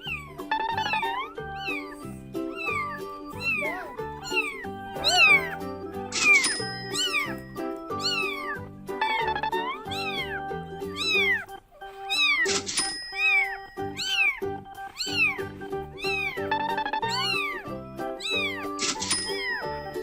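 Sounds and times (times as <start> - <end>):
cat meows in music: 0.0 - 12.6, 13.2 - 20.0
musical backing: 0.1 - 20.0.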